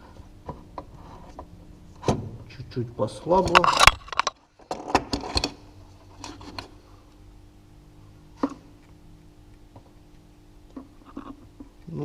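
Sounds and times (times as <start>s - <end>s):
metal tools clicking and knocking: 3.5s - 5.6s.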